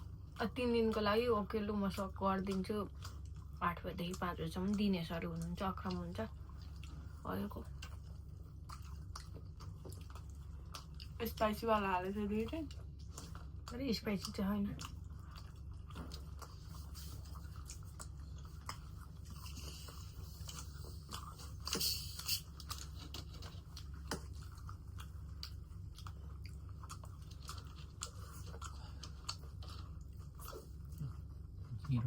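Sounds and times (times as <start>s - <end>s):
chewing with crunches: 0.0s - 32.0s
steady low hum: 0.0s - 32.0s
wet mouth clicks: 14.8s - 24.6s.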